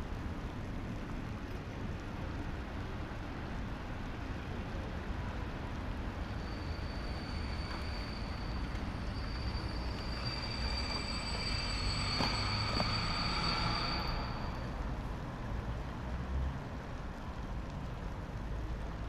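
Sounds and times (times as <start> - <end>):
high-pitched squealing whine: 6.0 - 14.9.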